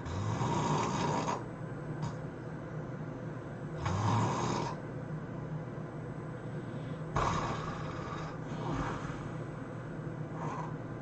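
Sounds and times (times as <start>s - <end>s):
steady low hum: 0.0s - 11.0s
sleeping person breathing: 6.4s - 9.6s, 10.3s - 11.0s.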